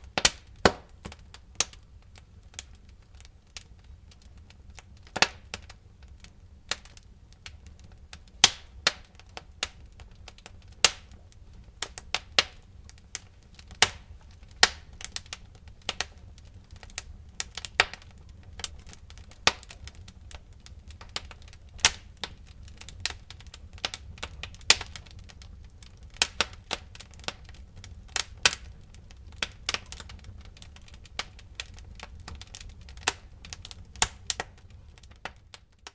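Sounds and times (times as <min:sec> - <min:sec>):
fire crackling and popping: 0:00.0 - 0:35.9
low rumble of fire: 0:00.0 - 0:35.9.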